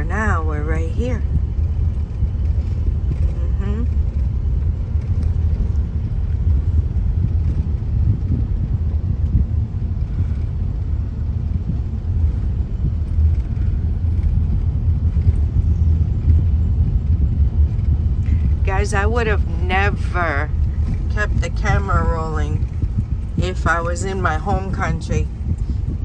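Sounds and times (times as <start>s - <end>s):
car interior driving rumble: 0.0s - 26.0s.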